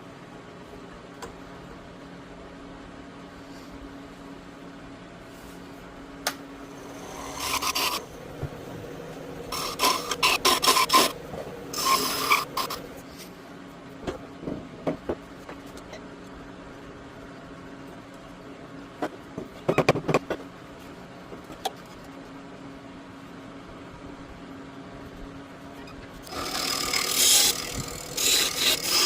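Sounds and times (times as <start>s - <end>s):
hand file scraping: 6.8s - 8.1s, 9.5s - 13.0s, 26.3s - 29.0s.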